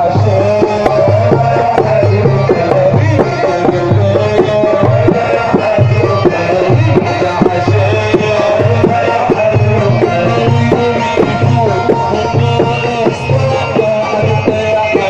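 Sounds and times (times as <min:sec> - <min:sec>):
hand drum rhythm: 0:00.0 - 0:15.0
low bass line: 0:09.6 - 0:13.5.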